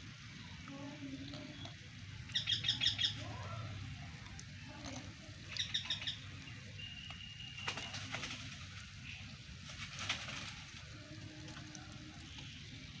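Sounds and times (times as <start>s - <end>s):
small bird chirping: 1.5s - 3.2s, 5.5s - 8.0s.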